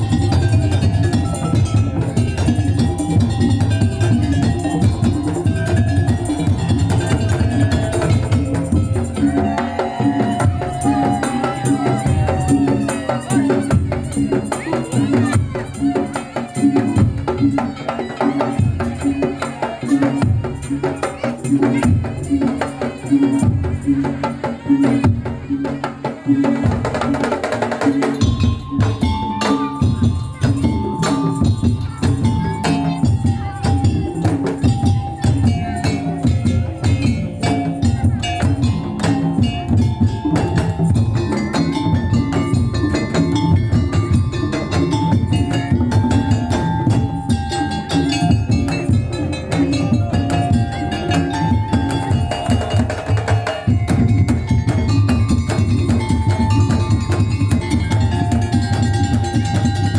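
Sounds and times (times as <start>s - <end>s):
drums and wooden percussion: 0.0s - 59.9s.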